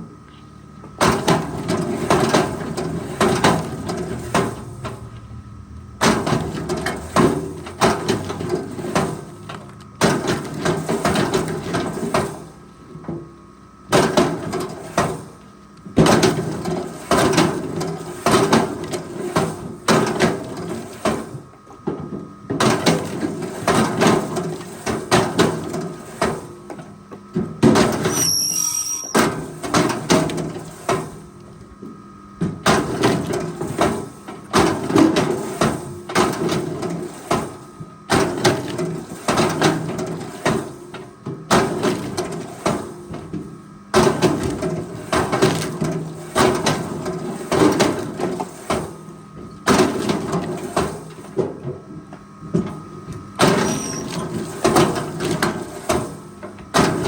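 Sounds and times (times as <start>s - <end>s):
loud metal clunks and scraping: 1.0s - 12.6s, 53.4s - 57.0s
forestry machine engine: 1.6s - 10.6s
brief high squeal: 28.1s - 29.3s, 53.6s - 54.1s.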